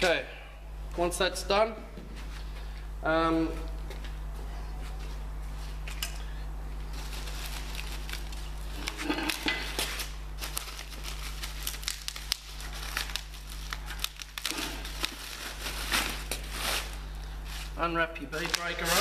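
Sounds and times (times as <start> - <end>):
low electrical hum: 0.0 - 19.0
plastic wrap crinkling and tearing: 6.9 - 19.0.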